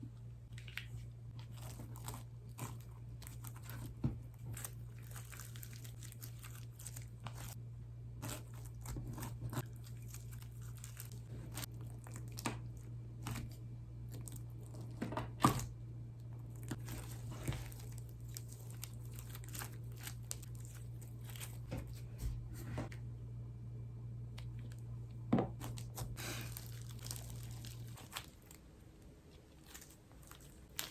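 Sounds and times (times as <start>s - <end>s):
steady low hum: 0.0s - 30.8s
slime crunching and crackling: 0.6s - 7.6s, 8.2s - 15.7s, 16.4s - 21.7s, 25.6s - 28.7s, 29.3s - 30.9s.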